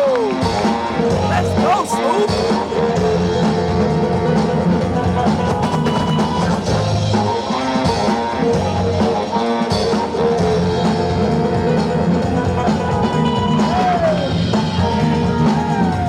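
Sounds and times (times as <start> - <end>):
loud music with guitar and drums: 0.0 - 16.0.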